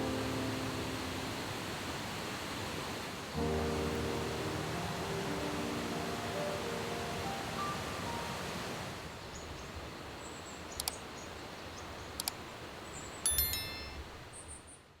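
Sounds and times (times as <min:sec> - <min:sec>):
light ticks: 0:10.7 - 0:11.1, 0:12.1 - 0:12.5
chime ringing: 0:13.2 - 0:14.2.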